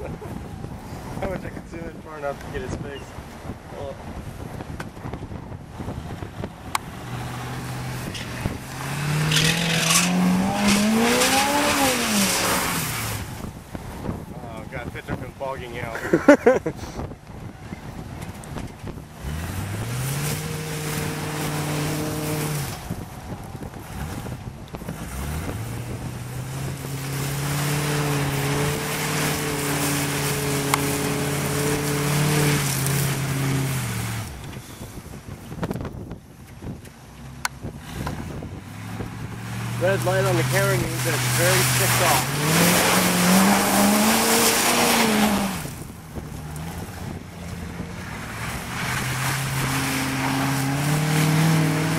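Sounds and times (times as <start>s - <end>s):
tires spinning in mud: 0.0s - 51.9s
broad rushing noise: 5.7s - 15.9s, 18.8s - 36.1s, 37.8s - 51.9s
truck engine revving hard: 5.8s - 13.6s, 19.1s - 35.1s, 37.8s - 51.9s.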